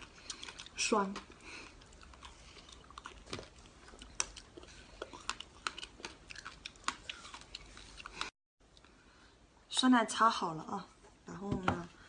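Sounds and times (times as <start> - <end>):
chewing crunchy food: 0.0 - 8.9.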